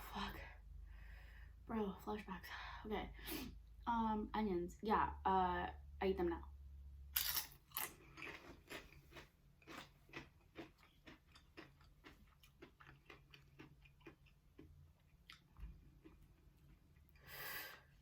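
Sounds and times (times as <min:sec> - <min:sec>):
crunchy wet chewing: 0:07.2 - 0:17.2.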